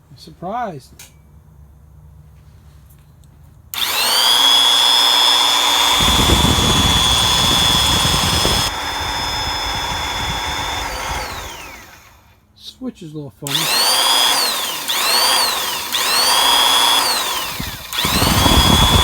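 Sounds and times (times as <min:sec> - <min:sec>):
electric hedge trimmer motor whining: 0:03.8 - 0:12.4, 0:13.5 - 0:19.0
coarse rattle: 0:03.9 - 0:12.2, 0:17.4 - 0:19.0.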